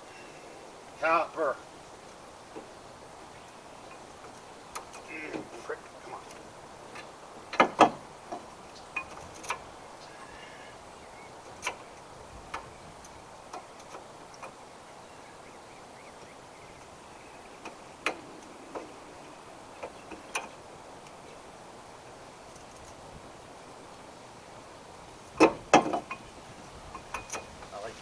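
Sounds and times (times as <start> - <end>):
light metal clicks and clinks: 26.9 - 27.8.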